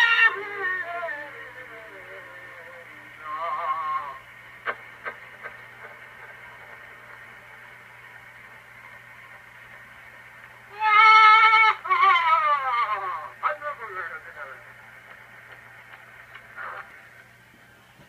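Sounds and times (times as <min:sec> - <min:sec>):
phonograph surface hiss: 0:00.0 - 0:18.0.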